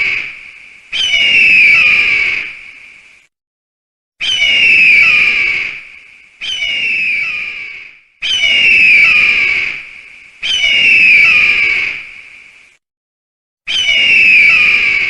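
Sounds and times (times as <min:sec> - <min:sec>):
bird of prey screeching: 0:00.0 - 0:02.6, 0:04.2 - 0:12.2, 0:13.7 - 0:15.0.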